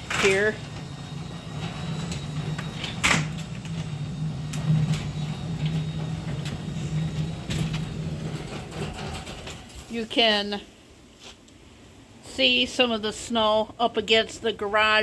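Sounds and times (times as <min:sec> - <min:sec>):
garage door opener motor hum: 0:00.0 - 0:09.9.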